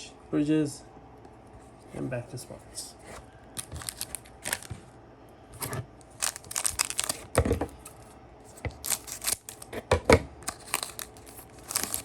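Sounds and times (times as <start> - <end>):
plastic wrapper tearing and crinkling: 3.6 - 4.8, 6.0 - 9.8, 10.4 - 12.0
cards tapping and rustling: 3.6 - 4.9, 5.6 - 12.0.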